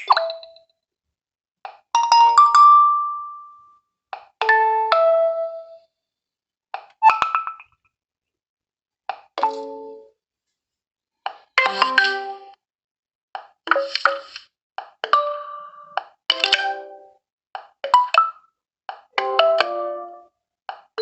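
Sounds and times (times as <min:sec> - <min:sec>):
short ringtone melodies: 0:02.0 - 0:03.6.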